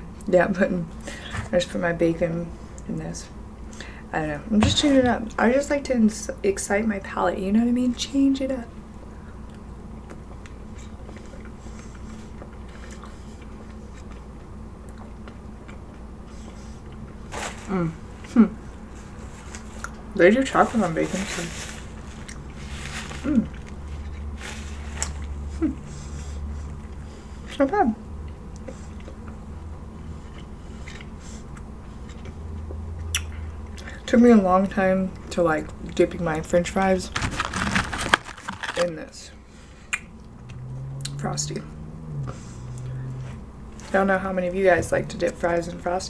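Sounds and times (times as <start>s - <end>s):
steady low hum: 0.0s - 46.0s
person chewing: 9.4s - 17.4s, 22.0s - 25.6s, 26.2s - 27.6s, 28.2s - 33.9s, 39.6s - 41.2s
wet mouth smacks: 33.0s - 33.4s, 39.9s - 40.3s.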